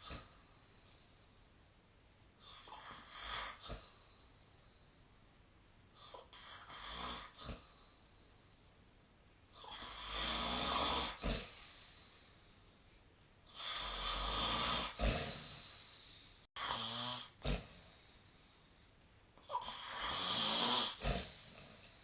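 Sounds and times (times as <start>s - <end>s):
person snoring: 9.6s - 11.9s, 13.5s - 18.1s, 19.4s - 21.9s.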